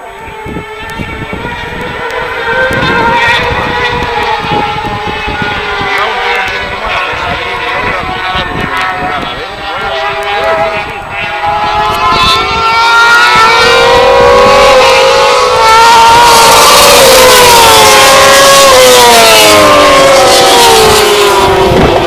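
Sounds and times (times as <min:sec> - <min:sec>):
motorcycle engines at high revs: 0:00.0 - 0:22.0.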